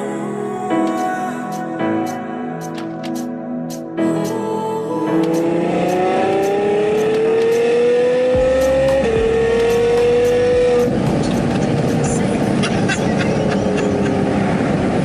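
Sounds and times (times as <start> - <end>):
sports car engine accelerating: 5.1 - 15.0.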